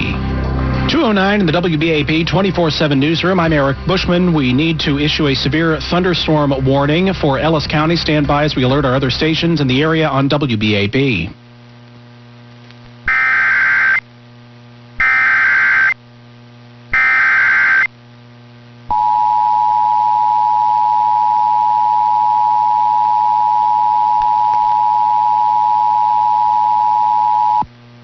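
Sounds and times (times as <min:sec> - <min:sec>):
low hum: 0:11.4 - 0:28.0
harsh data bursts: 0:13.1 - 0:14.0, 0:15.0 - 0:16.0, 0:16.9 - 0:17.9.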